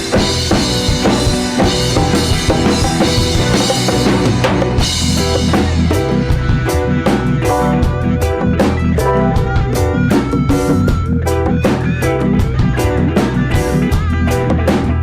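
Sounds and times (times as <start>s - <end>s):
guitar notes: 0.0s - 13.9s
bass notes: 0.0s - 15.0s
drum kit beat: 0.0s - 15.0s.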